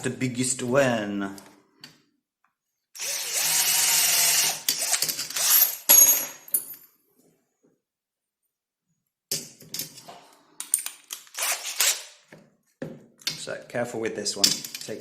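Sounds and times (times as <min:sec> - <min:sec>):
power drill motor whine: 0:03.0 - 0:05.6
parts handling clicks and knocks: 0:09.3 - 0:13.5, 0:14.4 - 0:15.0.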